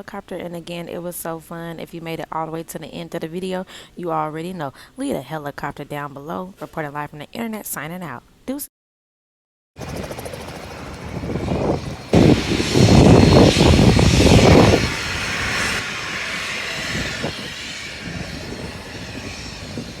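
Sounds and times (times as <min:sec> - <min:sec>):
helicopter engine and rotor: 0:09.8 - 0:20.0.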